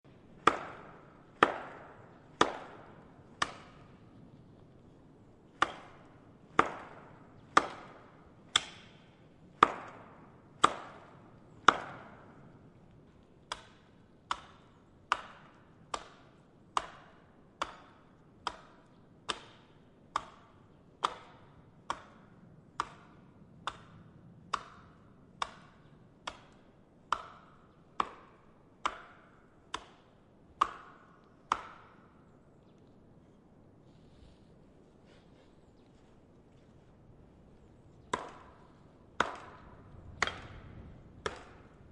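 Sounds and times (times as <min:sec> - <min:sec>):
axe chopping wood: 0:00.3 - 0:04.0, 0:05.5 - 0:12.4, 0:13.5 - 0:32.2, 0:38.1 - 0:41.9.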